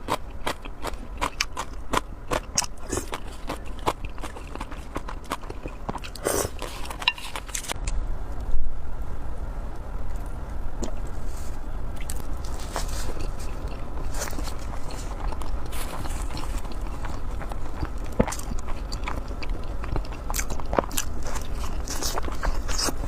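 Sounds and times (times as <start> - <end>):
person chewing food: 0.0 - 7.8, 12.0 - 23.0.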